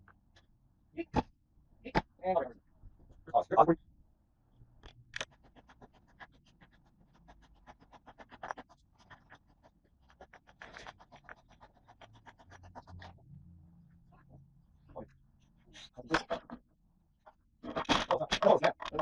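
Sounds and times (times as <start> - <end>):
rapid faint scratching clicks: 4.8 - 13.3.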